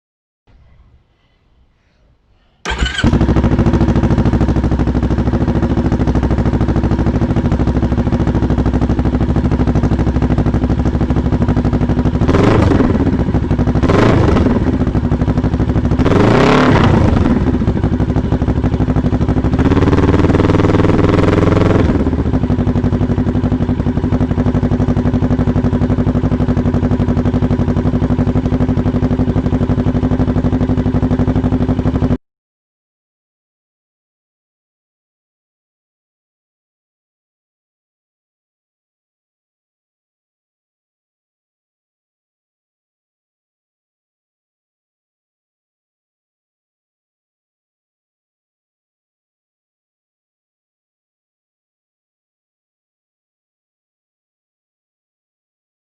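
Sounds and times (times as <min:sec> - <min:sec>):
motorcycle engine idling and revving: 0:02.7 - 0:32.2.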